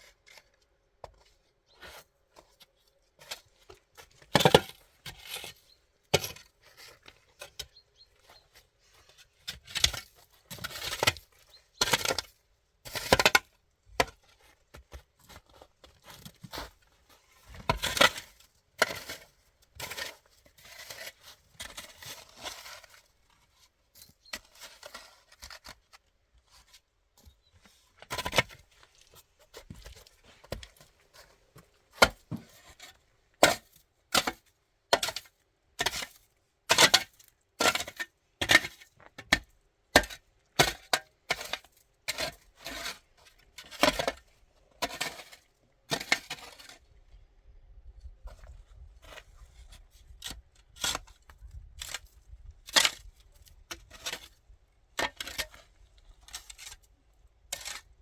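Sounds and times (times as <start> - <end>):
knocks and scrapes on wood: 27.2 - 33.0.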